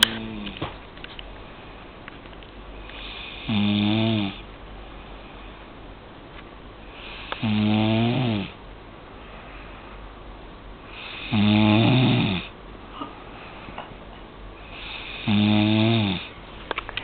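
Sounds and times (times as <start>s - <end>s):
woman snoring: 3.0s - 4.4s, 7.0s - 8.6s, 10.9s - 12.5s, 14.7s - 16.3s.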